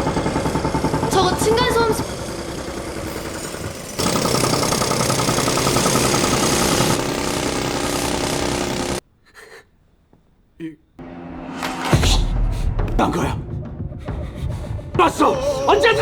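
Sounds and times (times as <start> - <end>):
loud rapid mechanical pounding: 0.0 - 9.0.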